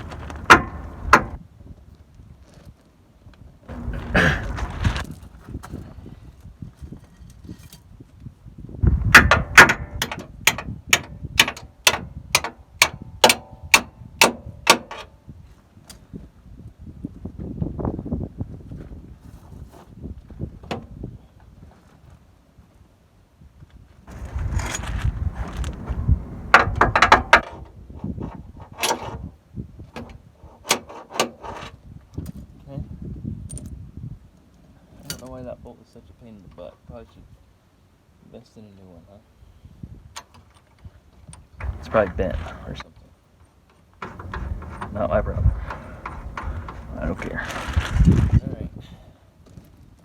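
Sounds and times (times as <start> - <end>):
hammer striking metal: 0.4 - 1.4
metal tools clinking: 44.0 - 47.5.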